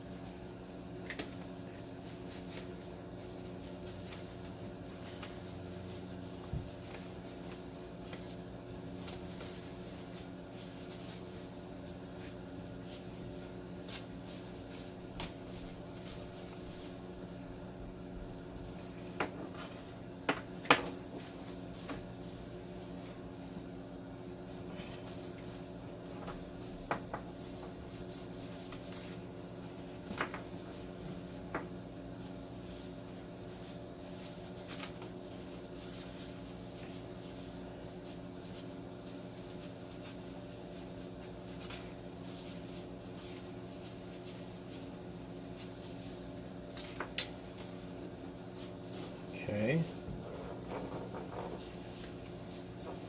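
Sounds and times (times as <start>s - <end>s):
steady hum: 0.0s - 53.0s
rubbing with cleaning wipe: 21.0s - 53.0s.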